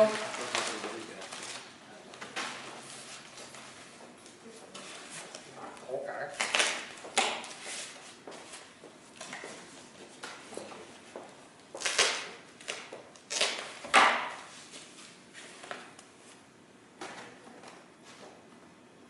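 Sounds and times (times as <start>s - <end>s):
packaging rustling and tearing: 0.0s - 3.3s.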